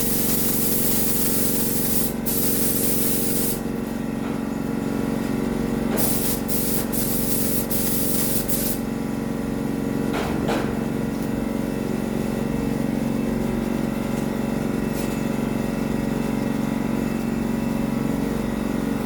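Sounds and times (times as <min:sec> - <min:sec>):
paint spray gun hiss: 0:00.0 - 0:03.7, 0:06.0 - 0:08.9
air compressor humming: 0:00.0 - 0:10.1.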